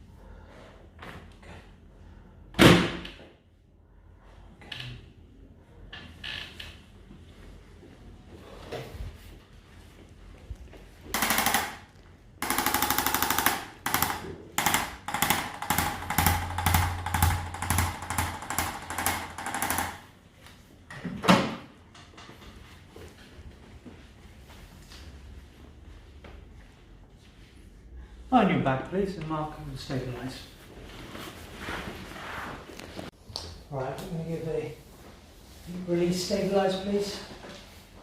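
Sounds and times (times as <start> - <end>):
handheld massager rattling: 11.2 - 20.1.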